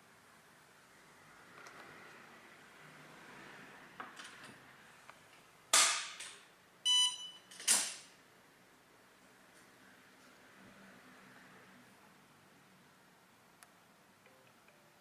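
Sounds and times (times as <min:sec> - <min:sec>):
short electronic beep: 0:06.9 - 0:07.5.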